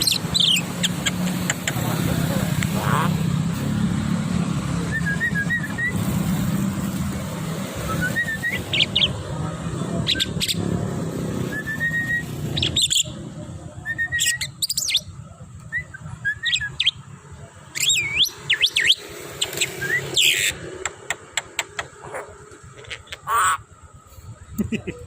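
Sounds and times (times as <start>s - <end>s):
bird whistling and chirping: 0.0s - 1.4s, 4.9s - 6.0s, 7.8s - 9.2s, 11.4s - 13.1s, 13.8s - 15.1s, 15.7s - 17.0s, 17.8s - 20.5s.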